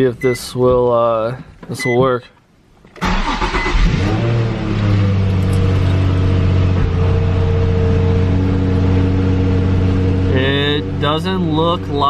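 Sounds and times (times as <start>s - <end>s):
car engine idling: 3.0s - 12.0s.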